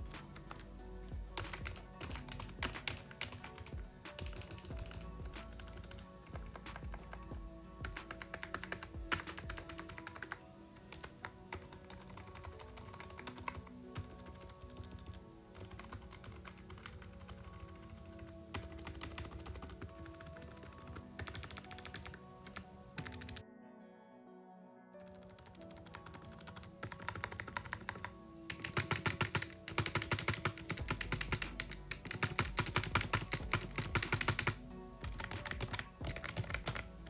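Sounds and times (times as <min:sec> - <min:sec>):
fast typing on keyboard: 0:00.0 - 0:23.4, 0:25.2 - 0:37.0
background music: 0:00.0 - 0:37.0.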